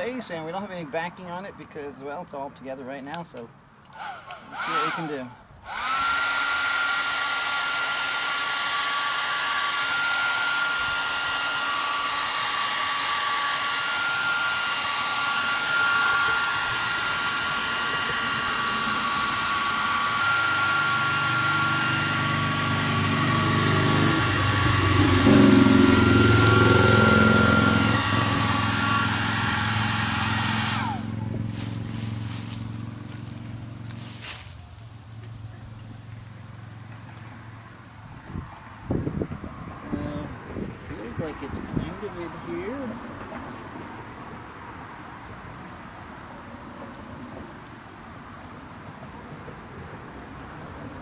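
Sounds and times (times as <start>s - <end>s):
hair dryer blowing with motor whine: 3.9s - 34.2s, 38.3s - 44.0s.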